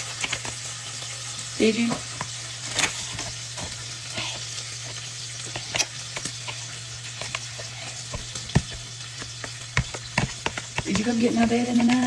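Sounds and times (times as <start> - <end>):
food sizzling in frying pan: 0.0 - 12.0
utensil taps and clicks: 8.1 - 12.0.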